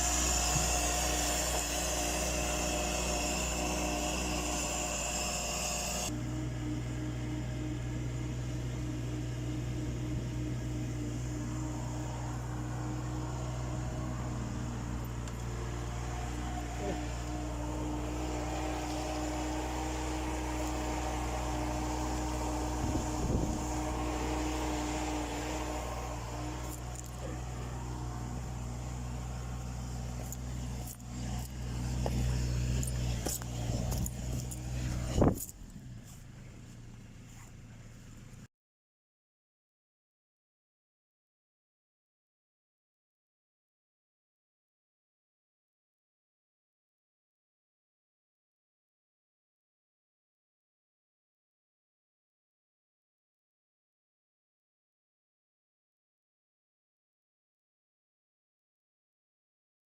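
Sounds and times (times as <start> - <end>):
diesel engine humming: 0.0 - 38.5.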